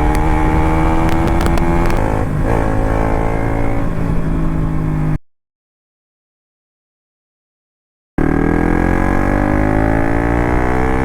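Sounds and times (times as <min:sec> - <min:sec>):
motorcycle engine running: 0:00.0 - 0:05.2, 0:08.2 - 0:11.0.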